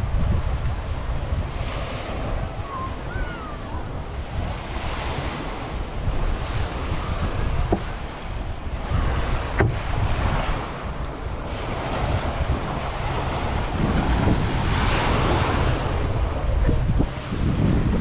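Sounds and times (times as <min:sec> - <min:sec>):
waves breaking on beach: 0:00.0 - 0:18.0
wind buffeting microphone: 0:00.0 - 0:18.0.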